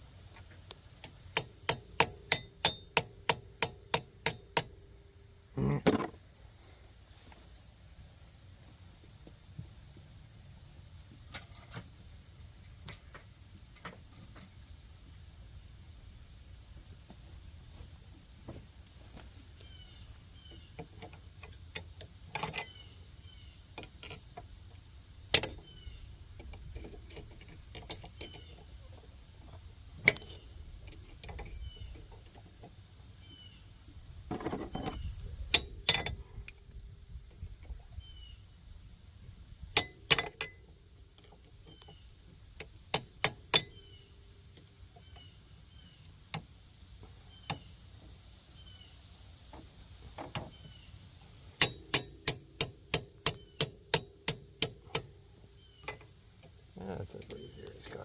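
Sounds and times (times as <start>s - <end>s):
small bird chirping: 19.6s - 21.0s, 22.5s - 23.8s, 25.5s - 26.4s, 28.0s - 29.1s, 30.2s - 33.9s, 37.7s - 39.1s, 41.2s - 49.3s, 50.4s - 52.1s, 53.0s - 54.1s, 54.8s - 58.0s
metal tools clinking: 34.7s - 36.2s.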